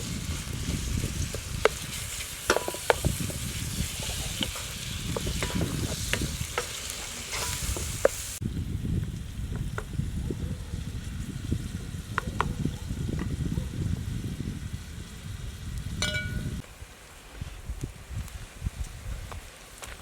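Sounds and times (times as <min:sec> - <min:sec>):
food sizzling in a pan: 0:00.0 - 0:08.4.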